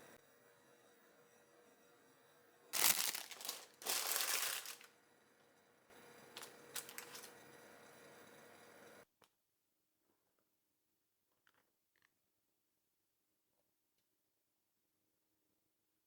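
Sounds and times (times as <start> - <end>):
thin sheet crinkling: 2.8 - 4.9, 6.3 - 7.3.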